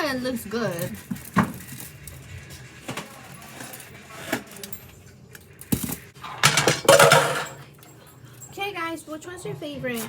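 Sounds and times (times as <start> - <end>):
dishes and utensils clattering: 5.7 - 8.1.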